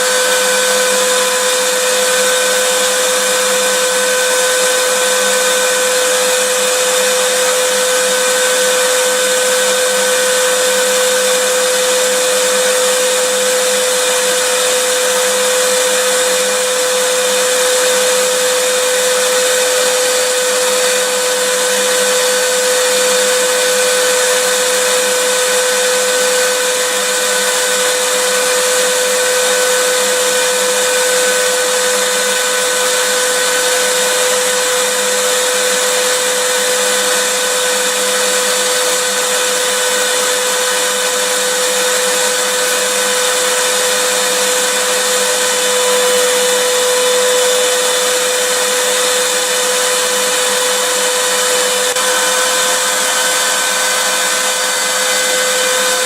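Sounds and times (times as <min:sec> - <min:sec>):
vacuum cleaner running: 0:00.0 - 0:56.0.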